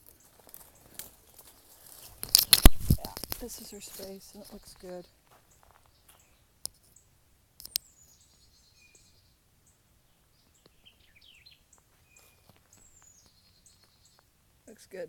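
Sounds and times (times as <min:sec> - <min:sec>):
birds singing and chirping: 0:00.0 - 0:15.0
faint outdoor background noise: 0:00.0 - 0:15.0
sharp click: 0:02.2 - 0:03.5, 0:07.6 - 0:07.9.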